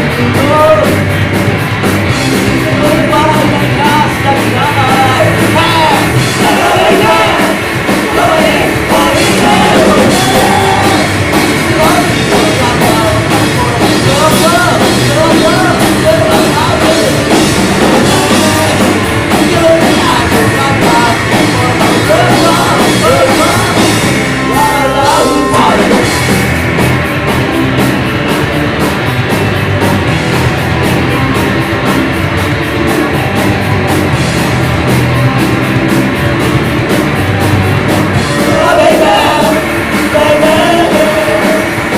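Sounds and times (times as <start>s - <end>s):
drum strokes: 0.0s - 41.9s
live rock band playing: 0.0s - 41.9s
person singing: 2.5s - 26.3s, 38.2s - 41.9s.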